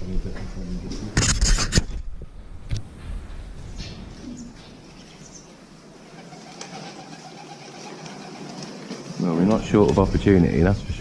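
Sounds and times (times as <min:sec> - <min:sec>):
pigeons cooing: 0:04.0 - 0:09.7.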